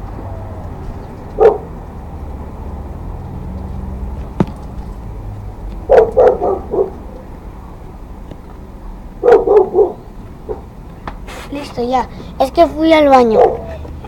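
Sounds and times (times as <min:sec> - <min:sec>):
dog barking: 0:01.4 - 0:01.7, 0:05.9 - 0:07.0, 0:09.2 - 0:10.7, 0:13.3 - 0:13.8.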